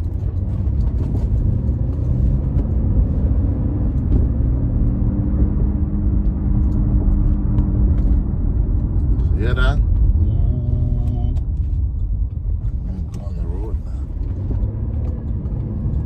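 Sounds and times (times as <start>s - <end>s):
car driving low rumble: 0.0s - 16.0s.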